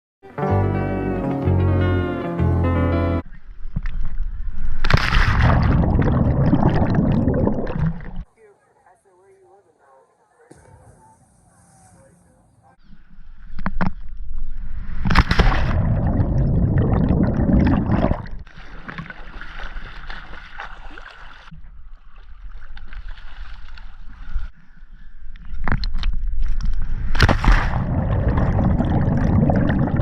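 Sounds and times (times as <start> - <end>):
water sloshing and splashing: 3.6 - 8.3, 14.9 - 24.5, 25.5 - 30.0.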